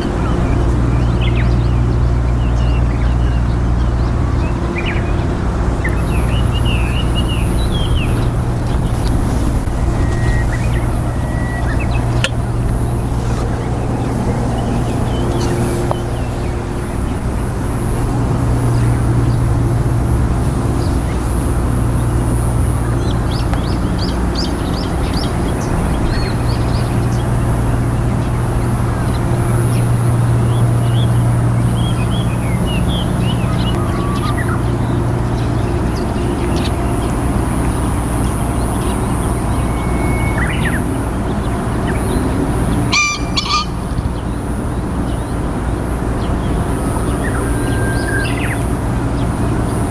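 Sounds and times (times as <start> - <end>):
pheasant crowing: 0.0 - 18.0, 42.8 - 44.0
wings beating: 0.0 - 44.0
small birds chirping: 0.0 - 49.9.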